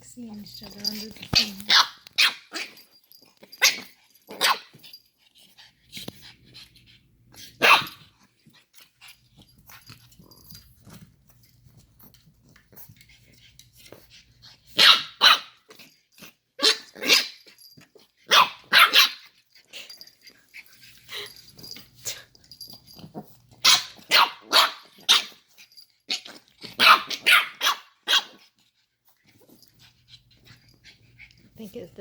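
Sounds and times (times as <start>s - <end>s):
puppies barking: 18.3s - 19.2s, 23.6s - 25.4s, 26.8s - 28.4s.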